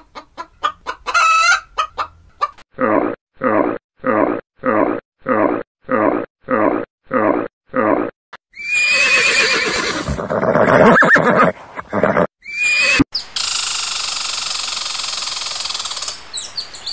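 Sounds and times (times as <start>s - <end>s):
horse neighing: 8.6s - 13.0s.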